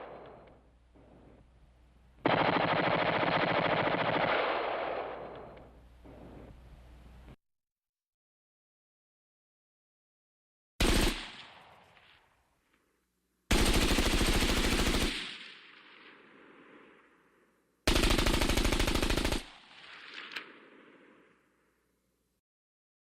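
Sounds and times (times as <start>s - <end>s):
machine-gun fire bursts: 2.2s - 5.6s, 10.8s - 11.6s, 13.5s - 15.6s, 17.9s - 20.4s.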